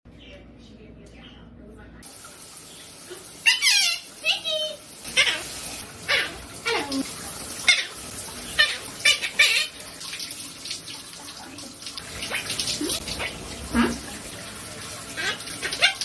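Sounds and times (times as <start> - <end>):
parrot chirps and squawks: 3.4 - 7.0, 7.6 - 9.8, 15.2 - 16.0.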